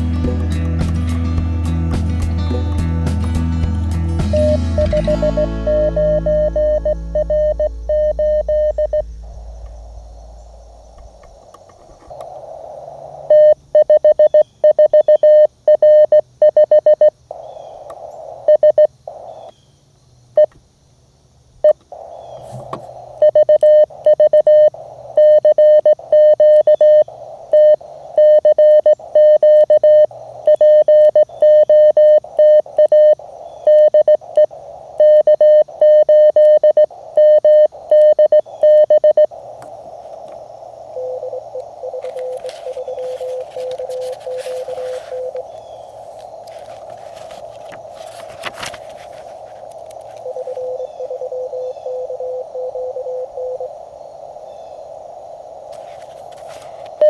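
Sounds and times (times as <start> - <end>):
morse code tone: 4.2 - 10.7, 23.1 - 39.5, 40.8 - 53.8
radio band hiss: 7.3 - 13.8, 17.2 - 19.6, 21.6 - 35.7, 37.7 - 52.6, 53.2 - 57.0.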